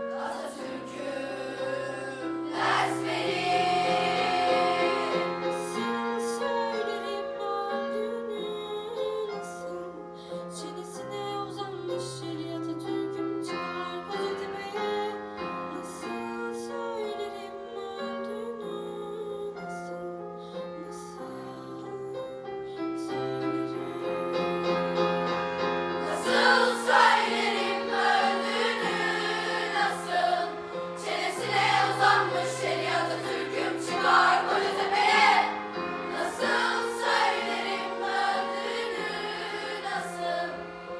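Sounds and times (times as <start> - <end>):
violin: 0.0 - 6.4
choir singing: 0.0 - 7.4, 25.4 - 40.9
piano: 0.0 - 40.9.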